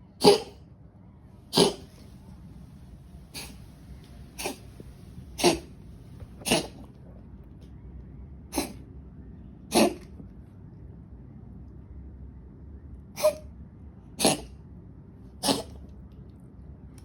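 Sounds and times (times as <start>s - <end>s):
cat coughing: 0.2s - 0.6s, 1.5s - 2.0s, 3.3s - 3.6s, 4.4s - 6.9s, 8.5s - 8.8s, 9.7s - 10.2s, 13.2s - 13.5s, 14.2s - 14.6s, 15.4s - 15.9s.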